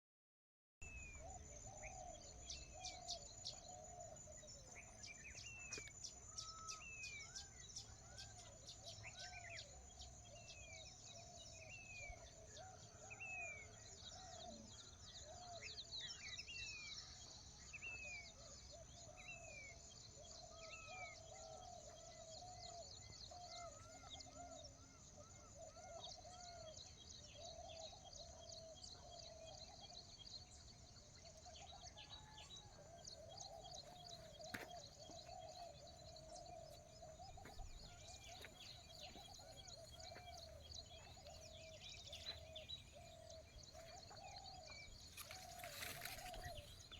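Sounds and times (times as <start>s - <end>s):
birds chirping: 30.1s - 46.9s.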